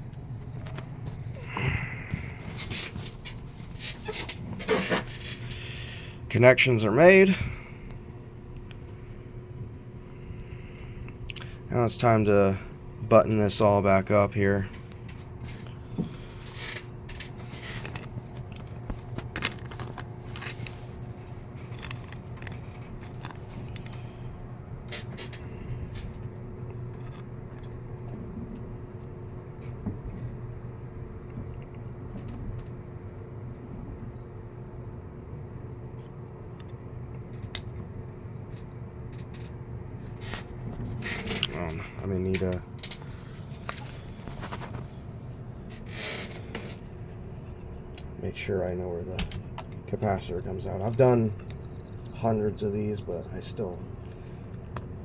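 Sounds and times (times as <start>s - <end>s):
steady low hum: 0.0s - 55.0s
clicks and scrapes of parts: 2.1s - 5.9s, 14.7s - 28.1s, 38.5s - 55.0s.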